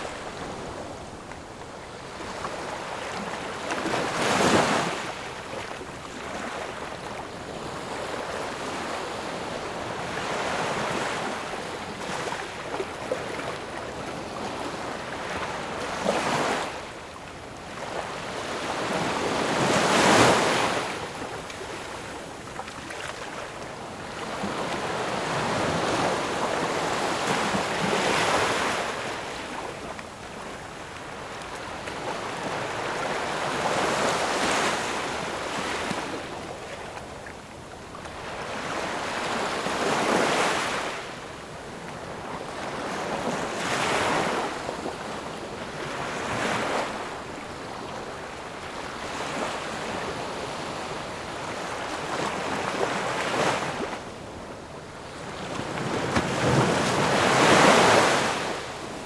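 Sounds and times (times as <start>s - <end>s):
ocean waves breaking: 55.3s - 59.0s.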